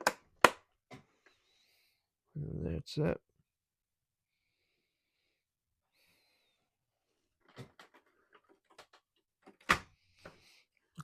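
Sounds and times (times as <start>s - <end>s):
plastic and metal clicks and knocks: 0.0s - 1.1s, 7.4s - 9.9s.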